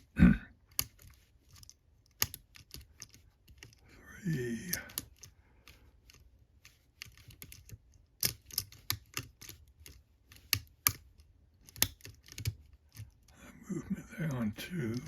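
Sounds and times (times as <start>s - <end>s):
lock pick clicking in padlock: 0.7s - 3.8s, 7.0s - 13.0s.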